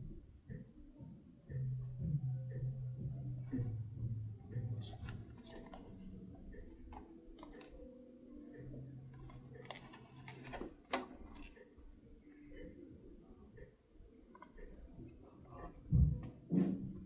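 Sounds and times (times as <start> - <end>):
low hum: 1.5 - 7.0.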